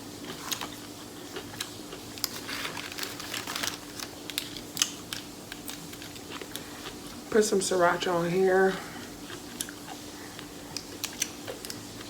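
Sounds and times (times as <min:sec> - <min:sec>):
crunching and chewing: 0:00.0 - 0:07.3, 0:08.9 - 0:12.0
faint steady hum: 0:00.0 - 0:12.0.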